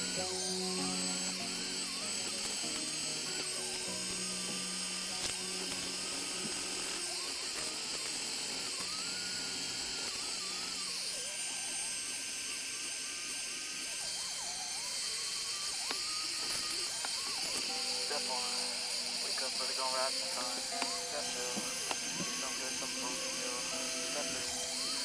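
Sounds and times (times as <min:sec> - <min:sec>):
background music: 0:00.0 - 0:07.0
power tool motor whining: 0:00.0 - 0:25.0.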